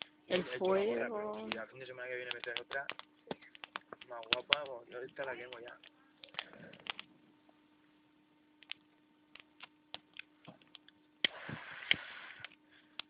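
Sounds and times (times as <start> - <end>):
bonfire crackling: 0.0 - 7.4.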